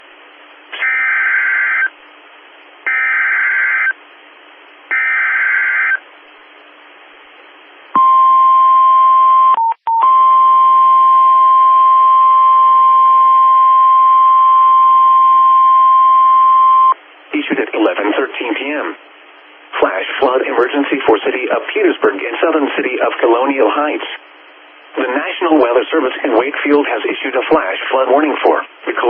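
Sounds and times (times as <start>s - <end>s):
steady warning alarm tone: 0.7s - 2.0s, 2.9s - 4.0s, 4.9s - 6.1s, 7.9s - 17.0s
screeching digital data tones: 0.8s - 1.9s, 2.9s - 4.0s, 4.9s - 6.0s
faint radio hiss: 6.0s - 8.0s, 17.0s - 29.0s.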